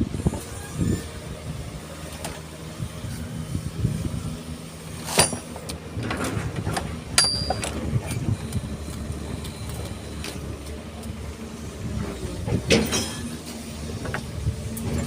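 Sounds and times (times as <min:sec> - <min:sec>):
excavator diesel engine running: 0:00.0 - 0:15.0
sharp metallic clanks: 0:05.0 - 0:05.6, 0:07.1 - 0:07.8.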